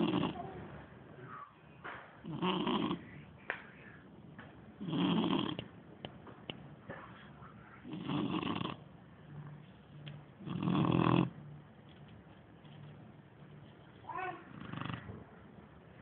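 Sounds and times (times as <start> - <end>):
dog snoring: 0.0 - 0.4, 2.2 - 3.1, 4.8 - 5.6, 7.8 - 8.8, 10.4 - 11.4, 14.5 - 15.1.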